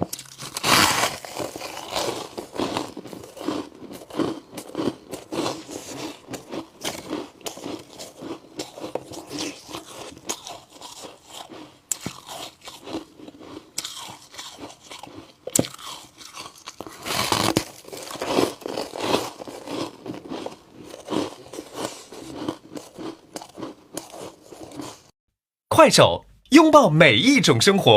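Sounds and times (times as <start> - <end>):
person crunching ice: 0.0 - 25.1.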